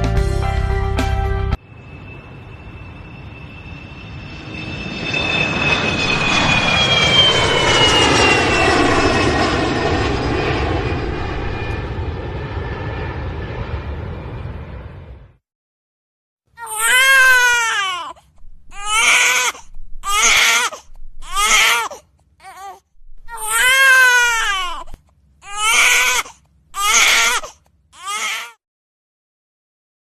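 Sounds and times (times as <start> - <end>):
infant crying: 16.6 - 28.6.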